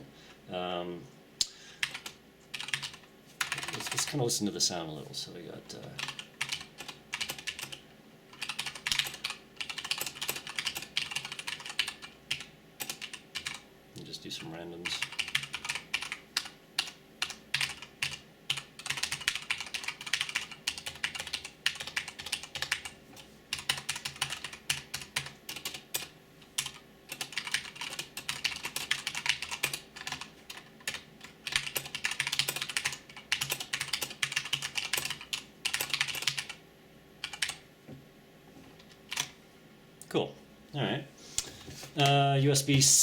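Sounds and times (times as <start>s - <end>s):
mechanical keyboard typing: 1.8s - 4.2s, 6.0s - 13.6s, 14.9s - 36.6s, 37.2s - 37.6s, 39.1s - 39.3s.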